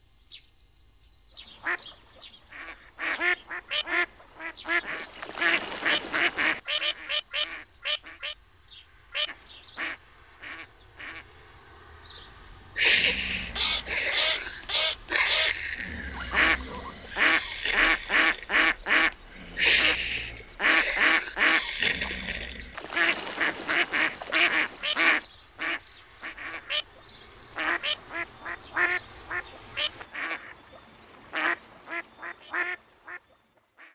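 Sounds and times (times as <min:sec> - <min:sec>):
duck quacking: 0:12.8 - 0:26.8.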